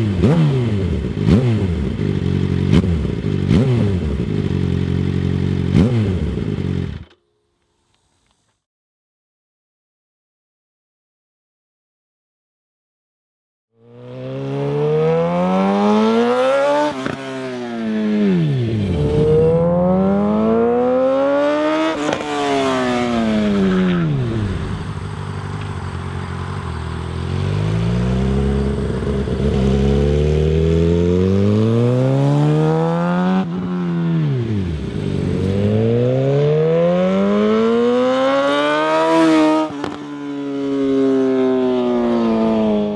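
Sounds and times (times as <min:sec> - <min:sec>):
motorcycle engine revving: 0:00.0 - 0:07.2, 0:13.9 - 0:42.9
exhaust pops: 0:22.0 - 0:30.1.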